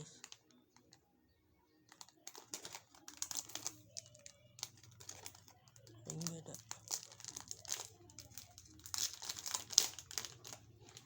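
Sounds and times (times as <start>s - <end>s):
plastic wrapper crinkling: 0.0s - 1.0s, 1.8s - 11.0s.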